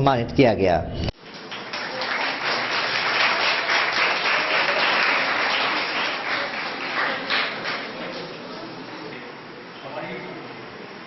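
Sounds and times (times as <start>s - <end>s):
audience applauding: 1.2s - 9.2s.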